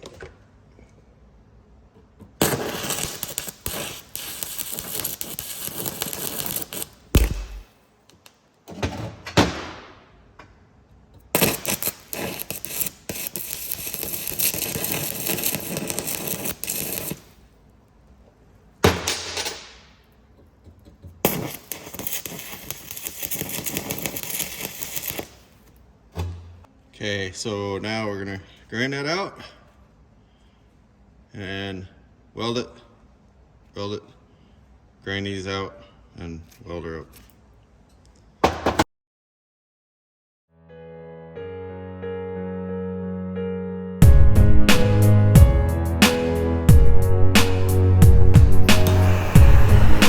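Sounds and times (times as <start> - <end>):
crackling welding arc: 2.4 - 7.7, 11.3 - 17.5, 21.2 - 25.7, 47.4 - 50.0
sharp knocks: 7.2 - 7.7.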